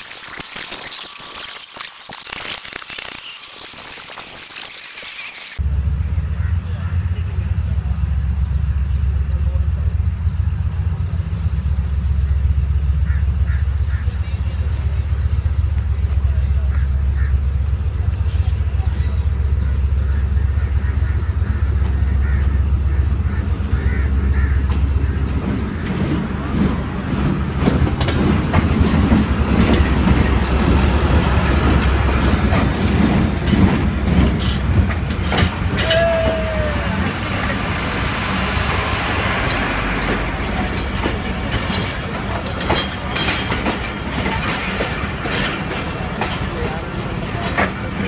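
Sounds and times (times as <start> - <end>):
wheel squeal: 0.0 - 5.6
locomotive engine droning: 5.6 - 48.0
train wheels clattering over rails: 24.5 - 37.4, 38.0 - 48.0.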